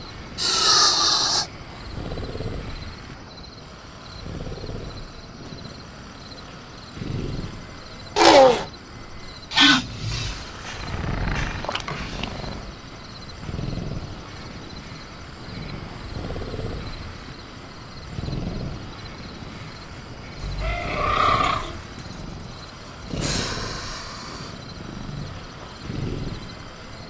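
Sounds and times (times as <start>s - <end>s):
creature breathing and growling: 0.0s - 27.0s
crickets chirping: 0.0s - 27.0s
creature screeching call: 0.4s - 1.5s, 8.2s - 8.7s, 9.5s - 9.9s, 20.6s - 21.8s.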